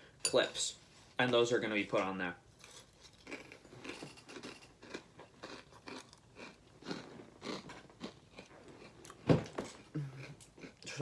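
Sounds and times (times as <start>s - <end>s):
cereal crunching while chewed: 2.6s - 9.2s.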